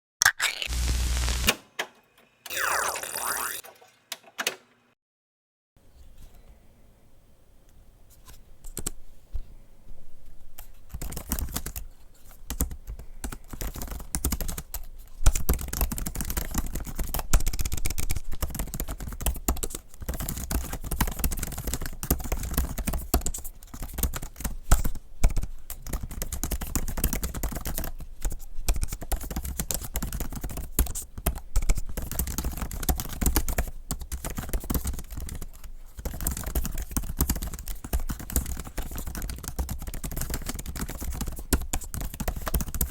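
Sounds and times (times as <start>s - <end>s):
fast typing on laptop keyboard: 10.9s - 11.9s, 12.5s - 42.9s.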